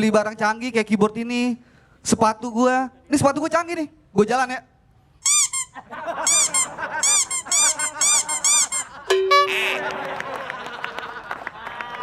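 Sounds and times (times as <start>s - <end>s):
squeaky shoes squeaking: 5.2s - 9.7s.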